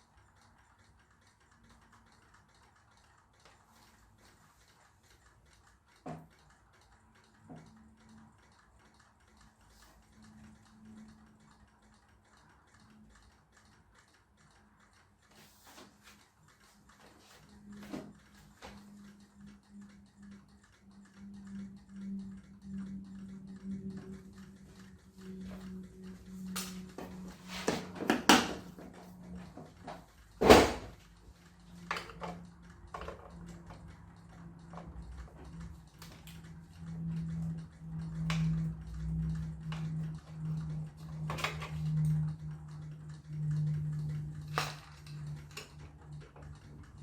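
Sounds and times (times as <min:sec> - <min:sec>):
faint rapid ticking: 0:00.0 - 0:27.4
faint steady hum: 0:00.0 - 0:47.0
knocks and clunks of parts: 0:27.5 - 0:31.0.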